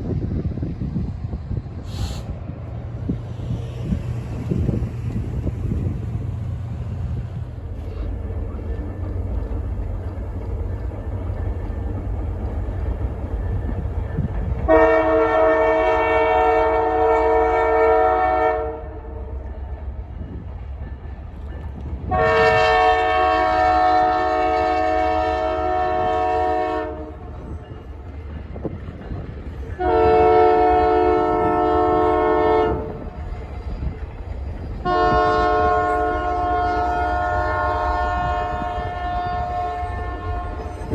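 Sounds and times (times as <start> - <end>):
passing train rumble: 0.0 - 40.9
locomotive air horn blasts: 14.7 - 19.3, 22.1 - 27.3, 29.8 - 33.0, 34.8 - 40.9.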